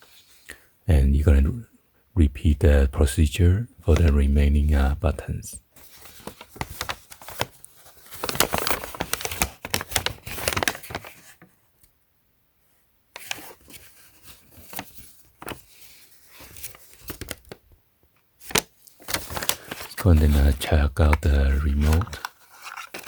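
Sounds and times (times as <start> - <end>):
packaging crinkling and rustling: 5.8 - 11.4, 13.2 - 17.6, 18.4 - 23.0.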